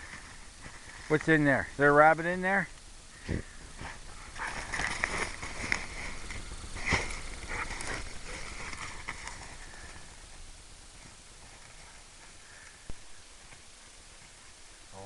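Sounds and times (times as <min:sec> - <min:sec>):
brush and twigs rustling: 0:00.0 - 0:15.0
twigs snapping: 0:04.4 - 0:10.0.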